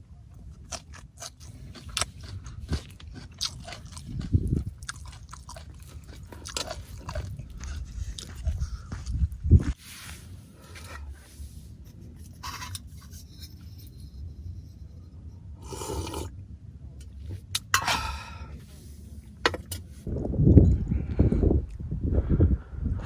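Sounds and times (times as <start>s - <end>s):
camping gear rustling: 9.7s - 14.0s
low rumble: 20.0s - 23.0s.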